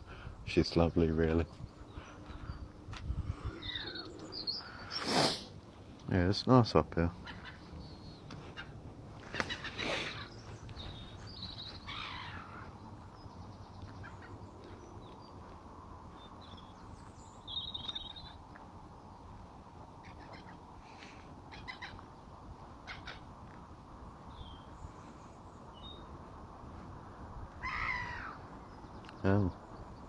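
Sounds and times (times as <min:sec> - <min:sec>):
low background noise: 0:00.0 - 0:30.0
bird chirps and calls: 0:03.4 - 0:05.4, 0:07.2 - 0:15.4, 0:16.1 - 0:18.4, 0:20.0 - 0:20.6, 0:21.5 - 0:22.2
bird trill: 0:03.5 - 0:05.0, 0:09.4 - 0:12.8, 0:17.4 - 0:18.4.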